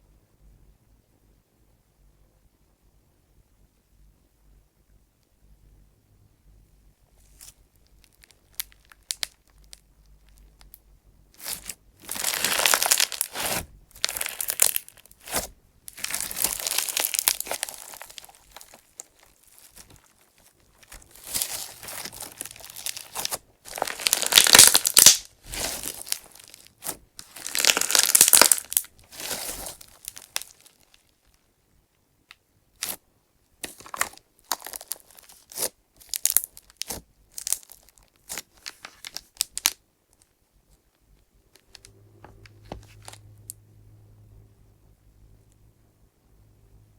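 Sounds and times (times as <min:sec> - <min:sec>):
crunchy slime squishing: 0:07.2 - 0:31.4, 0:32.8 - 0:33.0, 0:33.6 - 0:39.8, 0:41.5 - 0:43.6
clay chips grinding: 0:11.4 - 0:30.8.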